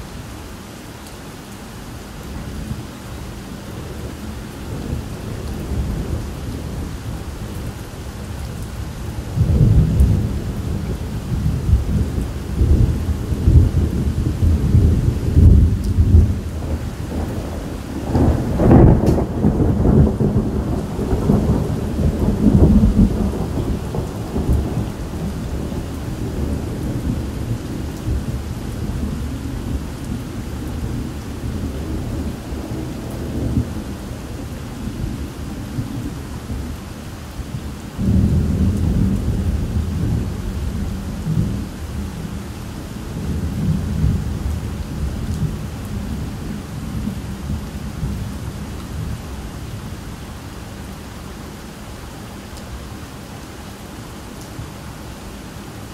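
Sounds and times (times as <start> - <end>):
steady rain: 0.0 - 55.9
thunder rumbling: 9.1 - 36.8, 38.0 - 49.2.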